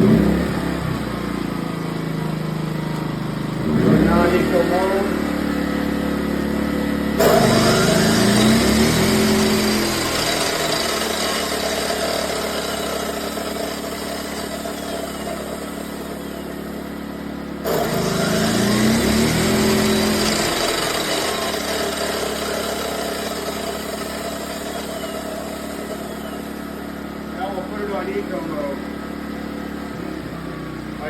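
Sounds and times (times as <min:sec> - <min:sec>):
inverter generator running: 0:00.0 - 0:31.0
electric chop saw motor: 0:07.2 - 0:28.7.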